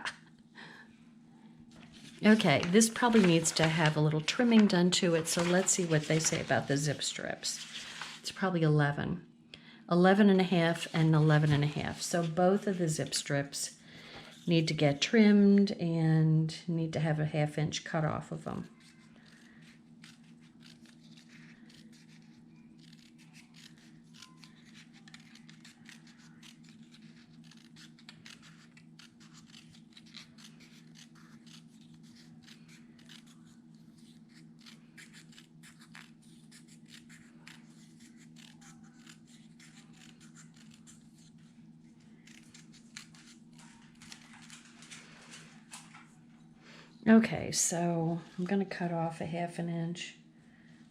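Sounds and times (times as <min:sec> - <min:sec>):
steady low hum: 0:00.0 - 0:50.9
paper being handled: 0:01.7 - 0:08.4, 0:20.0 - 0:46.1
scissors cutting paper: 0:02.1 - 0:08.2, 0:10.6 - 0:13.2, 0:18.6 - 0:41.4, 0:42.2 - 0:45.0.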